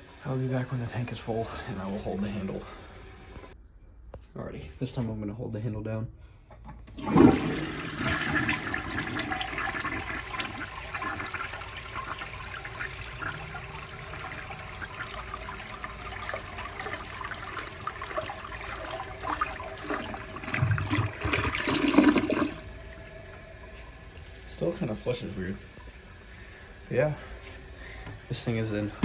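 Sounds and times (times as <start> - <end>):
toilet flushing: 0.0 - 3.6, 6.9 - 29.0.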